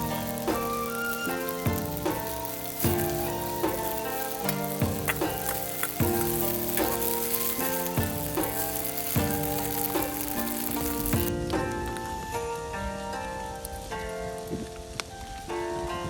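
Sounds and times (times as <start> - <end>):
food sizzling in a pan: 0.0 - 11.3
plucked background music: 0.0 - 16.0.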